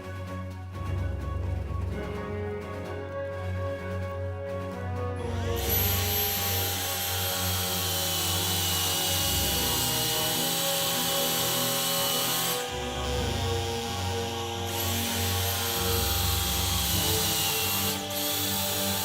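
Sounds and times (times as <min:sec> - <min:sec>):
background music: 0:00.0 - 0:19.0
vacuum cleaner motor whining: 0:05.4 - 0:19.0.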